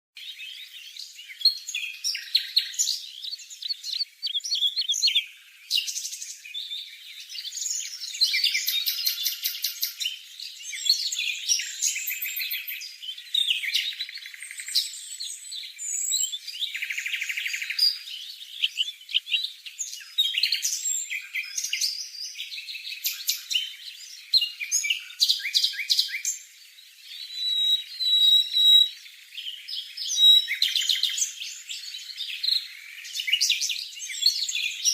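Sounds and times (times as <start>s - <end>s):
songbird chirping and trilling: 0.2s - 34.9s
bird whistled notes: 27.2s - 29.0s, 30.0s - 31.2s.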